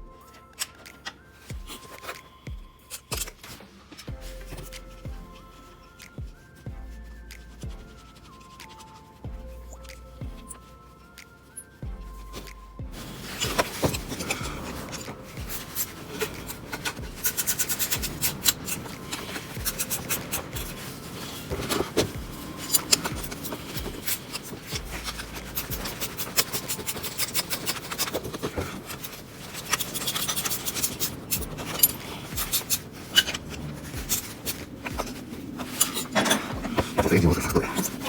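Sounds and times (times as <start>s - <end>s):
plastic and metal parts scraping: 0.0s - 38.0s.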